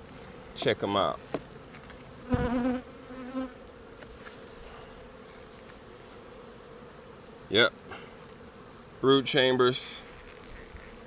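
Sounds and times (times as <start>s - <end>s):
bee buzzing past microphone: 0.0s - 11.0s
honeybees humming: 0.0s - 11.0s.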